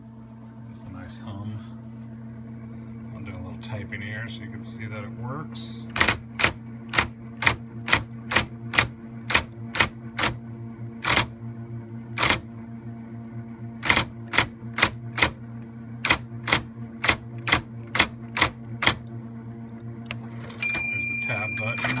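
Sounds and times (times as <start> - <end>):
electric typewriter key strikes: 5.9 - 10.4, 11.0 - 11.3, 12.2 - 12.4, 13.8 - 15.4, 16.0 - 19.1, 20.1 - 22.0
typewriter motor hum: 5.9 - 10.4, 11.0 - 11.4, 12.1 - 12.5, 13.8 - 15.4, 16.0 - 20.8.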